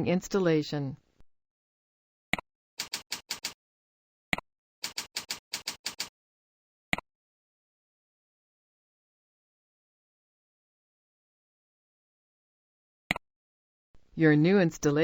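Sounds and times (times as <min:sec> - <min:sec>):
computer keyboard typing: 0:02.8 - 0:03.6, 0:04.8 - 0:06.1.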